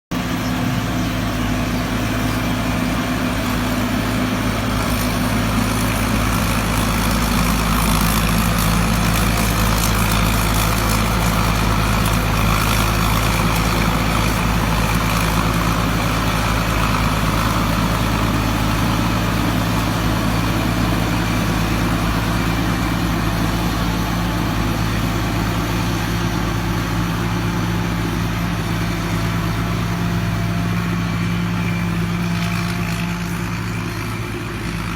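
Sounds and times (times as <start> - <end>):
combine harvester running: 0.1 - 34.9.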